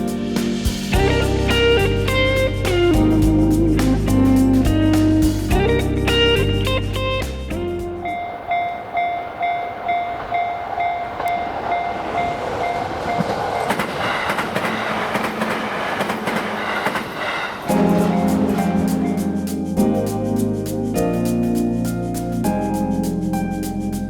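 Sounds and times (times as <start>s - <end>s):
level-crossing warning bell ringing: 8.2s - 14.2s.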